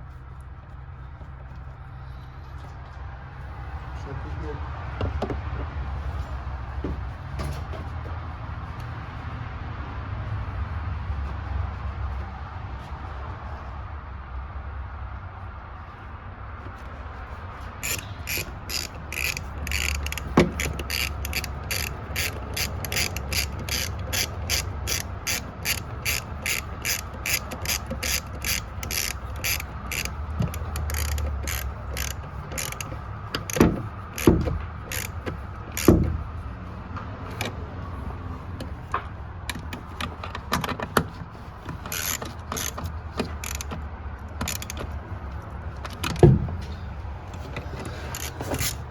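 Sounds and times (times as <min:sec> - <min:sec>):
metal parts knocking: 0:17.8 - 0:36.2
ratchet wrench clicking: 0:17.8 - 0:36.2, 0:41.7 - 0:45.0, 0:47.3 - 0:48.9.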